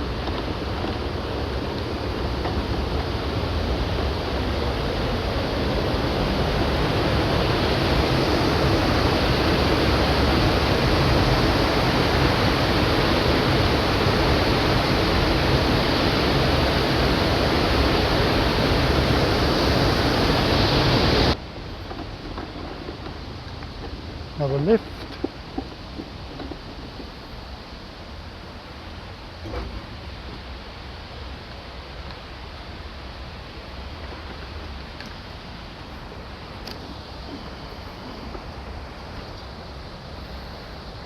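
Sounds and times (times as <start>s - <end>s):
waterfall rushing: 0.0s - 21.4s.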